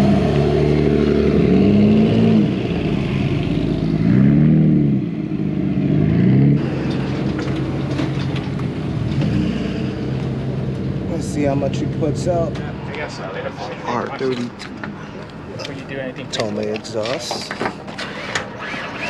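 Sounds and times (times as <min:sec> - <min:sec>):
car engine revving and idling: 0:00.0 - 0:13.1.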